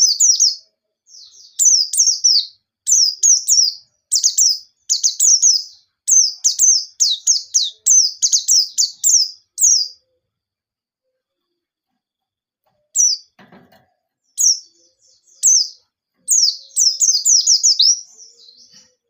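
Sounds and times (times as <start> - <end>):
bird chirping in rapid bursts: 0.0 - 10.0, 13.0 - 13.4, 14.3 - 18.8.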